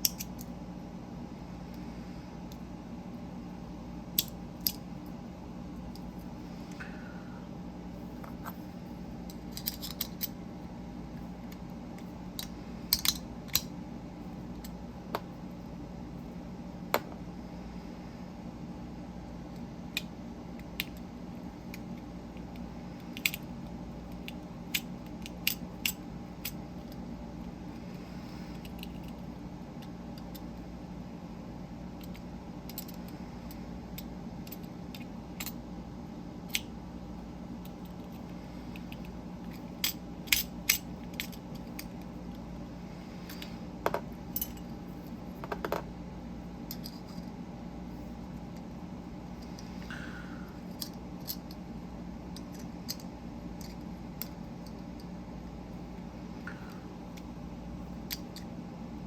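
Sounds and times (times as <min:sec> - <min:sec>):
low hum: 0:37.2 - 0:59.0.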